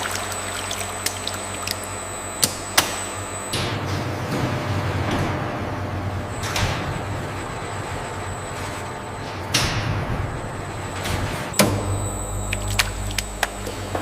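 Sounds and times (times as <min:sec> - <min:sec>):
factory machinery humming: 0:00.0 - 0:14.0.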